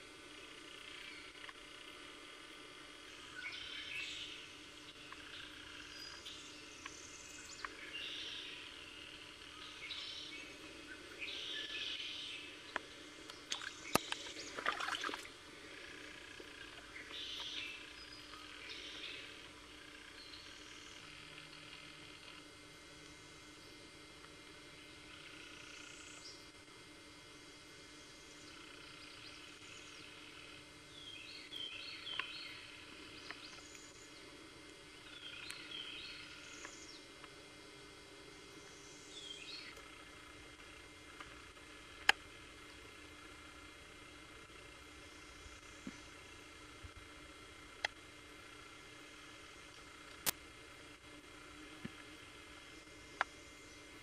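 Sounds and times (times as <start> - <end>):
birds singing: 3.1 - 22.4, 28.0 - 37.2, 38.5 - 40.3.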